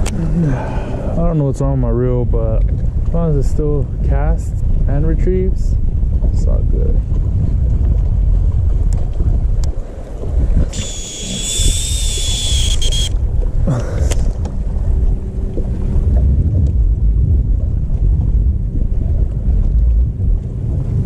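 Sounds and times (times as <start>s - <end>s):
wind buffeting microphone: 0.0s - 21.0s
fishing reel spool whine: 10.7s - 13.2s.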